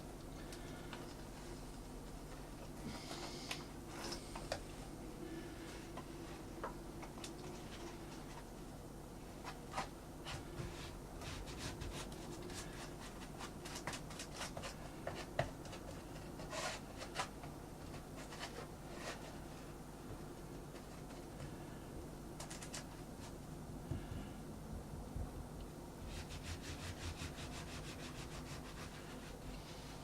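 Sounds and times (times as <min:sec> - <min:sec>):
steady low hum: 0:00.0 - 0:30.0
rubbing and scraping: 0:26.0 - 0:30.0.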